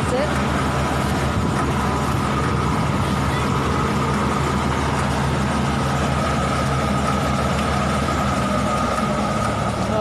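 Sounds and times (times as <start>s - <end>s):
large engine humming: 0.0s - 10.0s.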